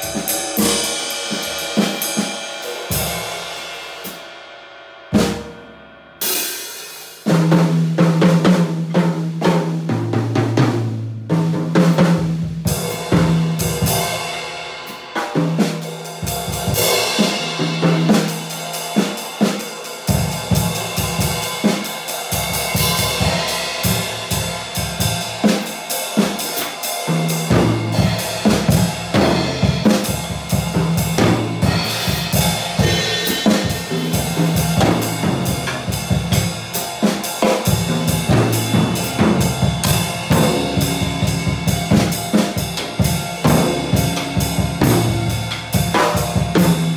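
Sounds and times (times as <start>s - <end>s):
drum kit groove: 0.0s - 4.3s, 5.1s - 46.9s
cymbals washing: 20.3s - 46.9s.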